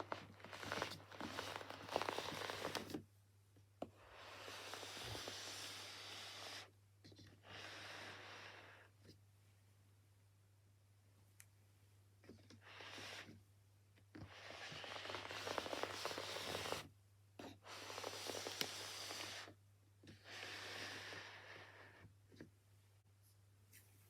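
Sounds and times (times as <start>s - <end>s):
cardboard box packaging tearing: 0.0s - 3.0s.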